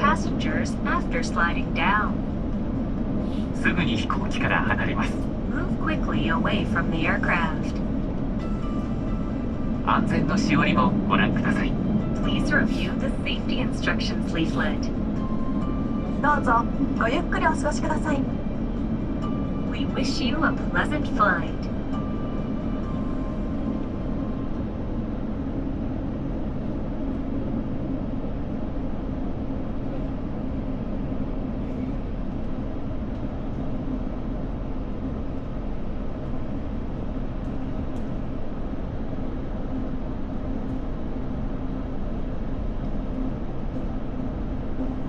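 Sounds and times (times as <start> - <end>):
airliner cabin jet engine drone: 0.0 - 45.0.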